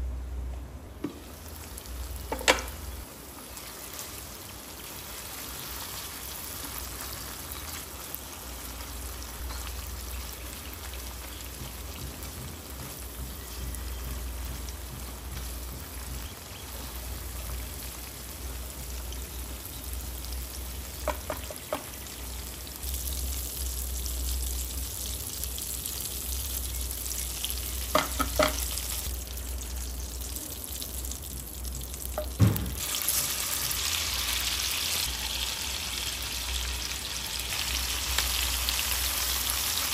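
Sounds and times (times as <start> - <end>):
food sizzling in a pan: 1.1 - 39.9
utensil knocking against pan: 21.0 - 21.9, 27.9 - 28.7.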